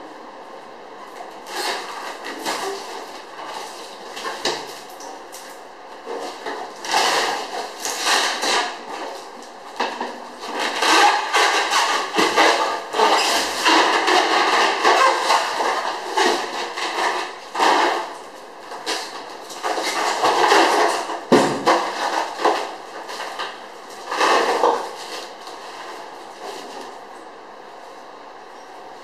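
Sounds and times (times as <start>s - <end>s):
rustling and scraping: 6.0s - 27.2s.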